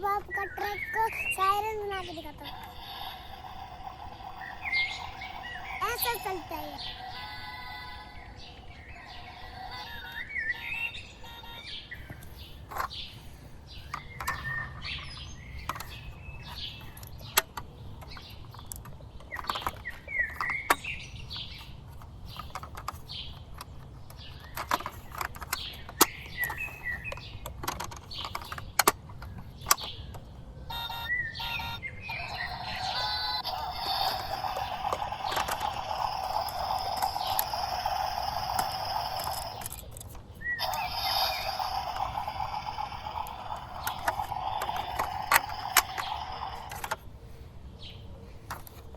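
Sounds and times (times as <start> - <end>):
small birds chirping: 0.0 - 48.9
sharp clicks and taps: 33.4 - 47.0.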